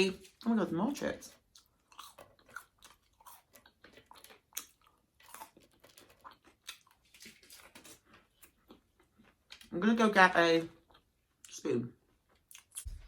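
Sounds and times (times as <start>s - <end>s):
person chewing crunchy food: 1.3s - 9.7s, 10.8s - 13.0s
wet mouth clicks: 12.5s - 13.0s.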